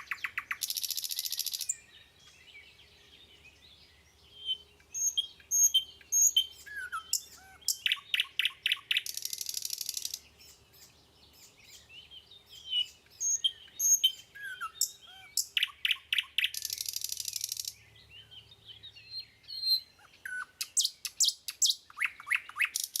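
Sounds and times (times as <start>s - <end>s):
songbirds chirping and whistling: 0.0s - 23.0s
buzzy bird trill: 5.0s - 10.2s, 12.8s - 17.8s.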